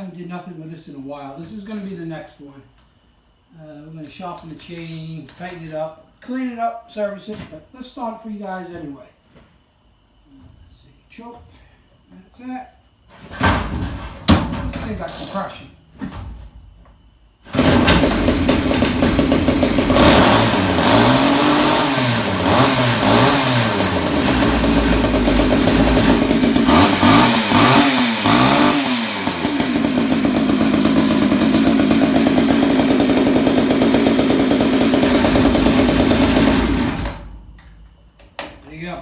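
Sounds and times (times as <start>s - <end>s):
chainsaw engine revving and idling: 17.5s - 37.2s.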